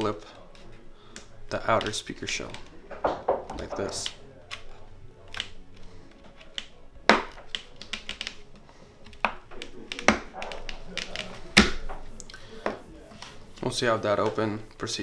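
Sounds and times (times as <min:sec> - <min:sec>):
plastic clips snapping: 0:00.0 - 0:14.9.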